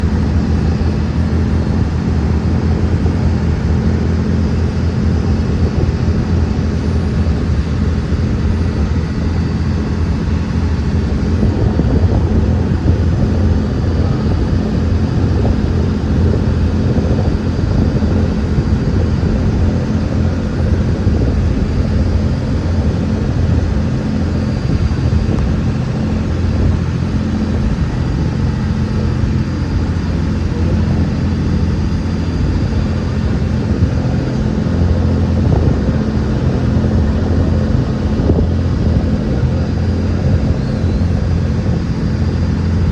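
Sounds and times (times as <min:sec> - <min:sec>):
engine rumbling: 0:00.0 - 0:42.9.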